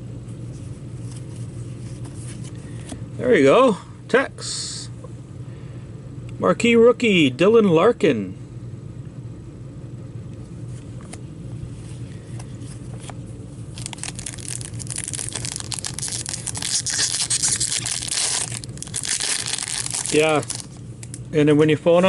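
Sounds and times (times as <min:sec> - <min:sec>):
steady low hum: 0:00.0 - 0:22.0
foil wrapper crinkling: 0:13.7 - 0:21.2.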